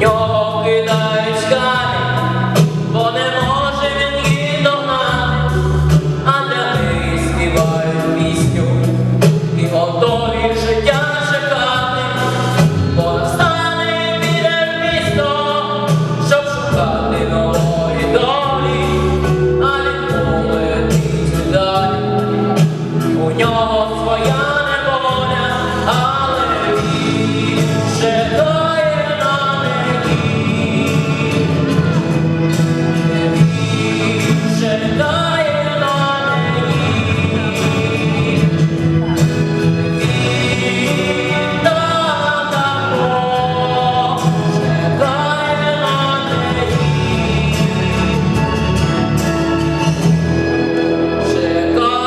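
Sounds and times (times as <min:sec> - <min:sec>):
singing with instrumental backing: 0:00.0 - 0:52.0.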